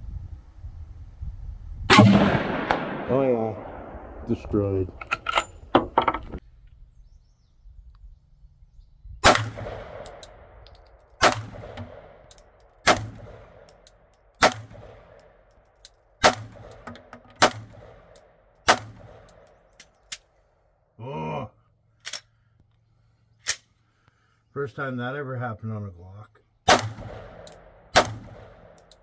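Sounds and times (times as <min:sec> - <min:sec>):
pistol shots: 0:01.9 - 0:04.9, 0:09.2 - 0:10.4, 0:11.2 - 0:13.7, 0:14.4 - 0:15.2, 0:16.2 - 0:19.4, 0:26.7 - 0:28.9.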